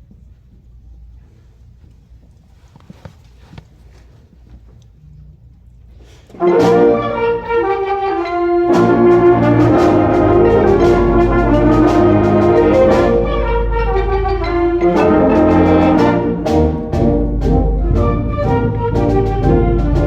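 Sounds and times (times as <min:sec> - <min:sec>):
loud brass music: 0:06.4 - 0:20.0
low bass line: 0:06.6 - 0:20.0.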